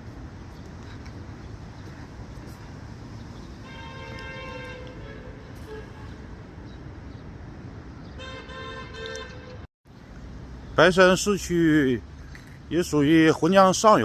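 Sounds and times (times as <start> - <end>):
urban background noise: 0.0 - 14.0
vehicle horn: 3.6 - 6.4, 8.2 - 9.7.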